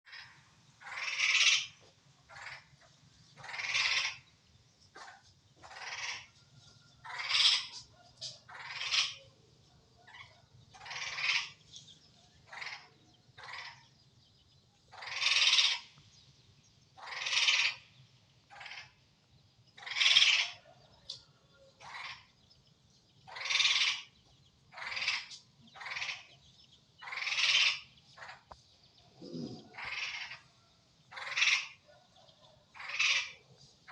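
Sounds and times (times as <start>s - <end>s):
animal making harsh calls: 0.1s - 2.7s, 3.4s - 4.2s, 5.0s - 6.4s, 7.0s - 9.3s, 10.1s - 11.6s, 14.9s - 15.9s, 17.0s - 17.8s, 18.5s - 19.0s, 19.8s - 20.6s, 23.3s - 24.1s, 24.7s - 26.3s, 27.0s - 28.4s, 29.2s - 30.4s, 31.1s - 31.8s, 32.8s - 33.9s.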